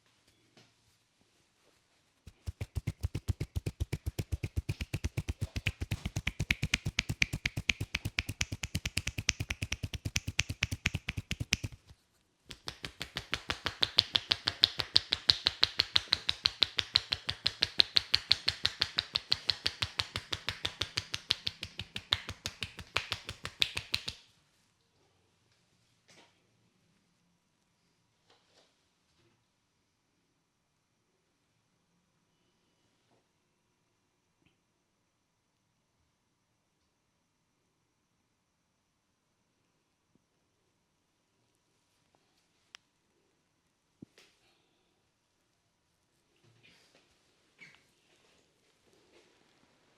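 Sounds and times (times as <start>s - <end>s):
hands rapidly striking a head: 2.3s - 24.2s.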